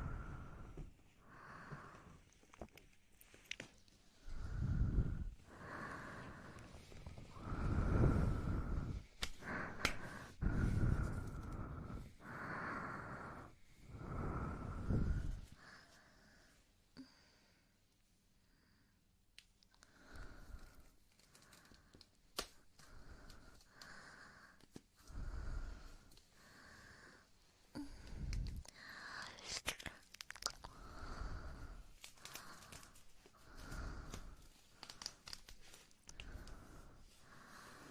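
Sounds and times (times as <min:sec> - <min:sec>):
deep breath on microphone: 0:04.3 - 0:17.2
breathy mouth sounds: 0:27.7 - 0:37.9
wet tongue and lip clicks: 0:28.3 - 0:30.8.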